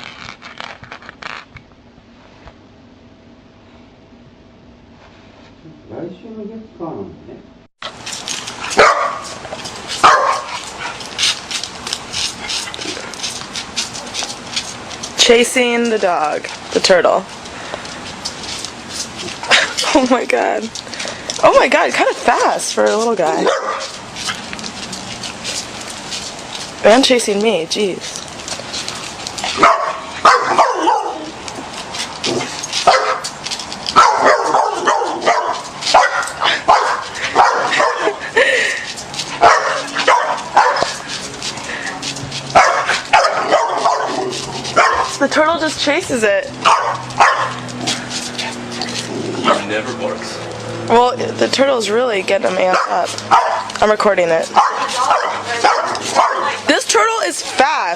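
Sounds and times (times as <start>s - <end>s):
quick scratchy scuffs: 7.8s - 20.0s, 20.7s - 38.3s, 38.9s - 50.9s, 52.4s - 57.9s
dog barking and yipping: 8.4s - 14.9s, 21.5s - 26.7s, 28.5s - 38.5s, 39.2s - 45.4s, 46.2s - 49.8s, 52.4s - 57.9s
dog barking: 8.7s - 9.4s, 10.0s - 10.6s, 23.4s - 24.0s, 29.6s - 31.3s, 32.8s - 33.2s, 34.0s - 38.2s, 39.4s - 41.0s, 42.5s - 45.2s, 46.6s - 47.7s, 52.7s - 53.7s, 54.5s - 56.6s.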